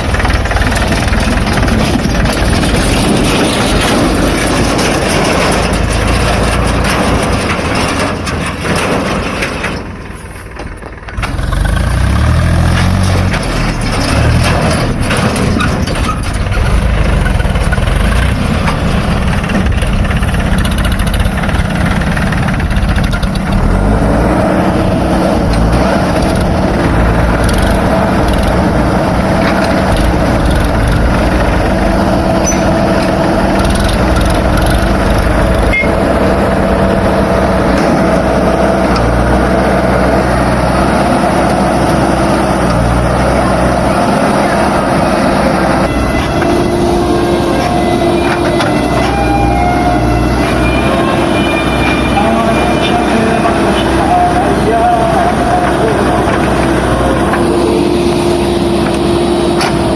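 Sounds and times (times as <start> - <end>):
heavy diesel engine running: 0.0 - 59.9
steady high-pitched tone: 45.9 - 56.2.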